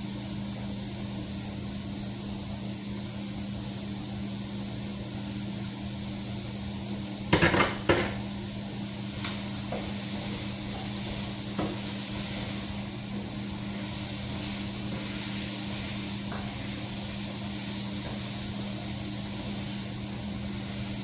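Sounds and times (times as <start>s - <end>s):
onions sizzling in a pan: 4.3s - 21.0s.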